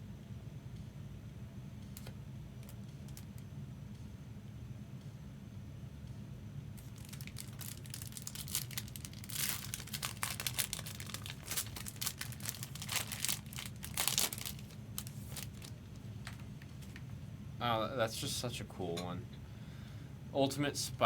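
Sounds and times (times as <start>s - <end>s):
foil wrapper tearing and crinkling: 6.8s - 15.8s.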